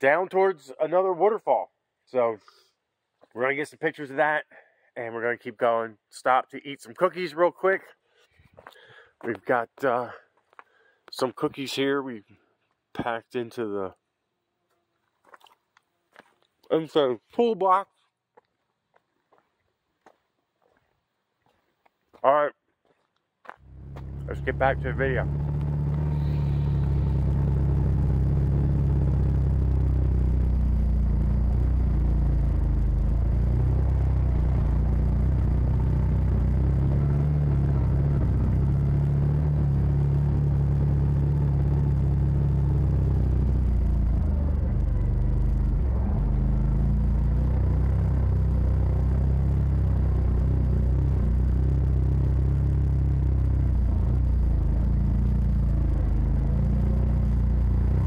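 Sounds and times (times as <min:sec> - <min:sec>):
utility vehicle engine running: 0:23.6 - 0:58.0.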